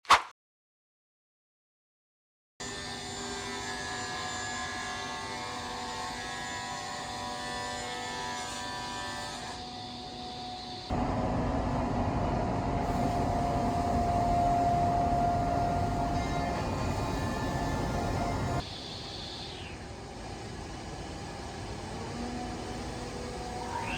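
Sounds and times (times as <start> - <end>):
loud machining noise: 2.6 - 18.7
cnc router whine: 2.6 - 23.9.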